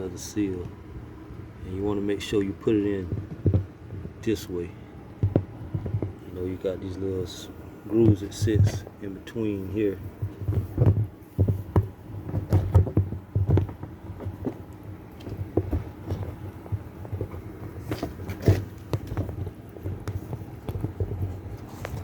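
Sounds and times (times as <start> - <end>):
steady low hum: 0.0 - 22.0
knocks and clicks of parts: 5.2 - 6.2.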